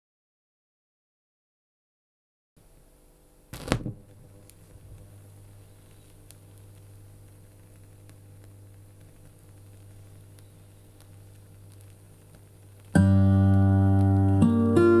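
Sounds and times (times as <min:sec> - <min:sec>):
low mains hum: 0:02.6 - 0:15.0
turntable surface noise and clicks: 0:03.5 - 0:15.0.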